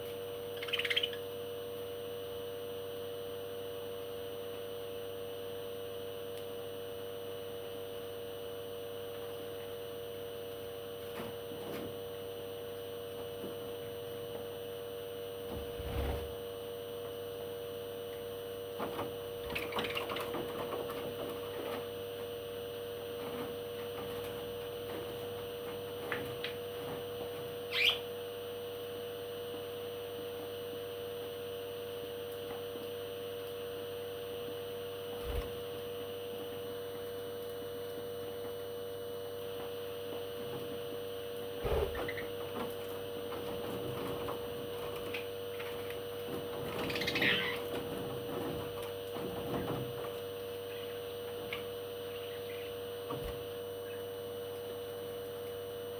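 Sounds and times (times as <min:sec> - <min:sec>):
electrical hum: 0:00.0 - 0:55.9
parrot chirping: 0:00.6 - 0:01.3, 0:27.7 - 0:28.0.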